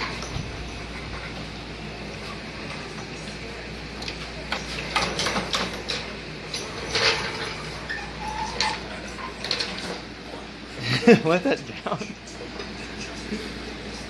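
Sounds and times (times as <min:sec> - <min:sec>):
shop background noise: 0:00.0 - 0:14.0
tools clicking and clattering: 0:04.0 - 0:10.1.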